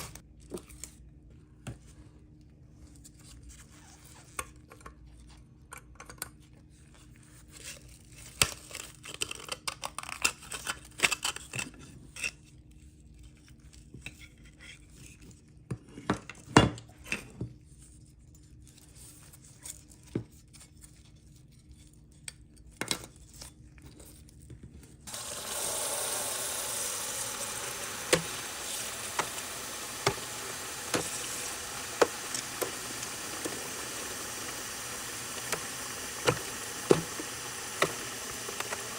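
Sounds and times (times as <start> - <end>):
steady hiss: 25.1 - 38.9.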